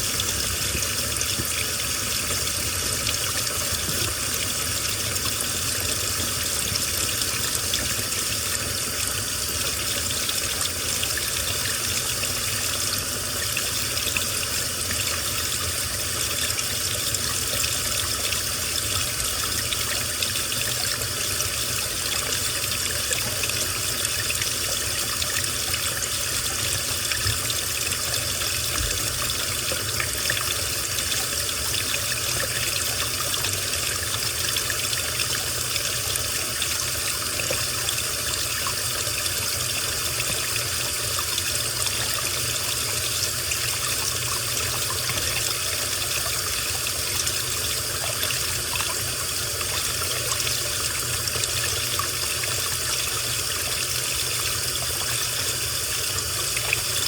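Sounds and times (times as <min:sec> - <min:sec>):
water rushing in washing machine: 0:00.0 - 0:57.0.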